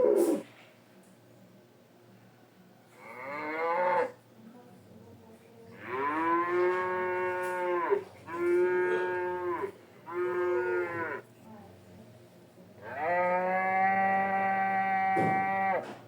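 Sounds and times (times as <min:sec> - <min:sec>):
cow-like lowing moos: 0:05.8 - 0:11.2, 0:12.8 - 0:15.9.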